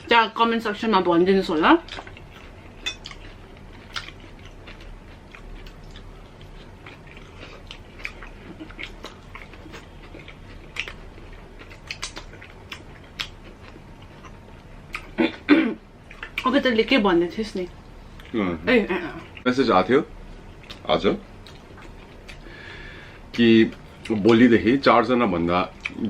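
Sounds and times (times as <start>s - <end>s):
people chewing food: 1.0s - 19.5s, 20.2s - 26.0s.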